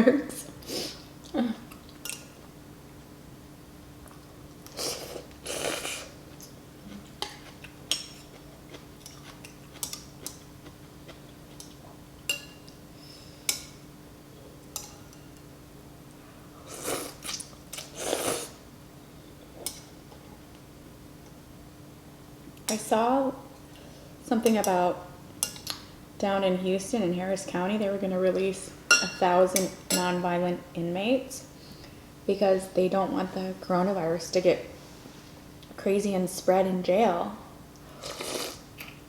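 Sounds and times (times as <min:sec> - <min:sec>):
faint steady hum: 0:00.0 - 0:39.0
slurping noodles: 0:04.7 - 0:06.2, 0:16.7 - 0:18.6, 0:38.0 - 0:38.6
chewing: 0:05.2 - 0:12.0.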